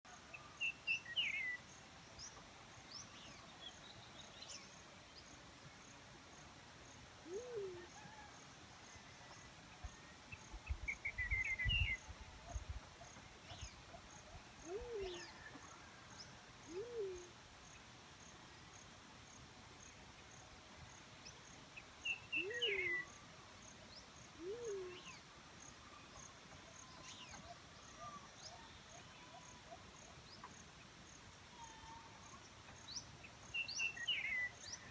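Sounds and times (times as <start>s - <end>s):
dove hooting: 7.3s - 8.3s, 14.6s - 15.4s, 16.7s - 17.4s, 24.4s - 25.1s.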